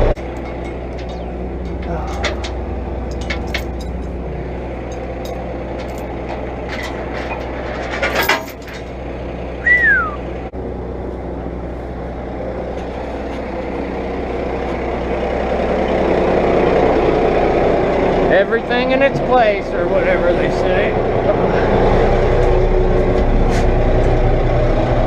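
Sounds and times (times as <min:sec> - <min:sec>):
heavy vehicle engine running: 0:00.0 - 0:25.0
brief falling squeal: 0:09.6 - 0:10.2.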